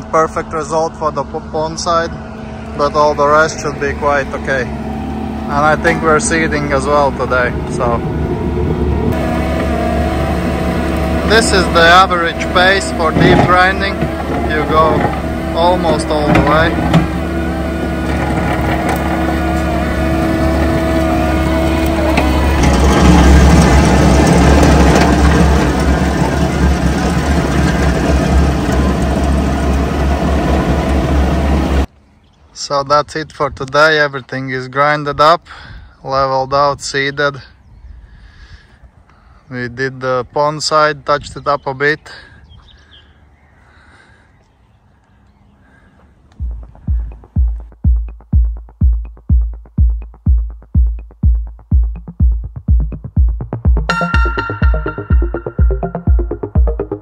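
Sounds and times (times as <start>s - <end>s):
engine running under load: 0.0s - 31.9s, 45.7s - 57.0s
grinder grinding the ground: 9.1s - 31.9s
electronic dance music: 46.4s - 57.0s
heavy kick drum: 46.4s - 57.0s.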